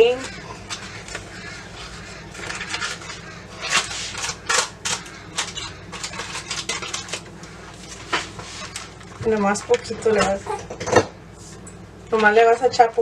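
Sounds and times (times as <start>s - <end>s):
kitchen containers and utensils clattering: 2.4s - 7.2s.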